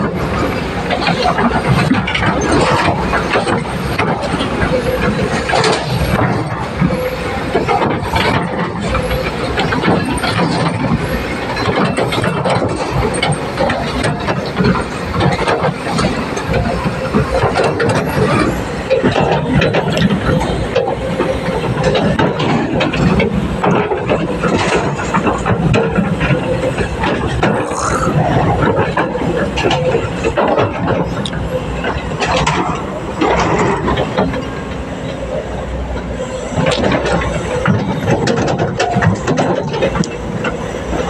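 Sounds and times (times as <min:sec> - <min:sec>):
excavator engine running: 0:00.0 - 0:41.0
machine knocks and squeals: 0:00.4 - 0:32.5.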